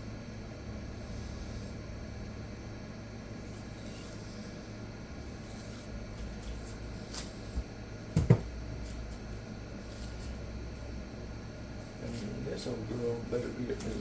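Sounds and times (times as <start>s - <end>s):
low steady hum: 0.0s - 14.0s
hard objects knocking: 8.2s - 8.5s.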